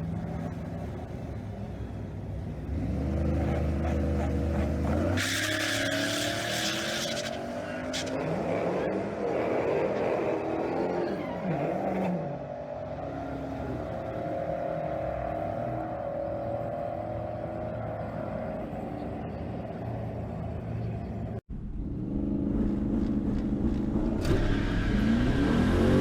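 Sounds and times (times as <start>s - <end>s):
engine running: 21.5s - 26.0s.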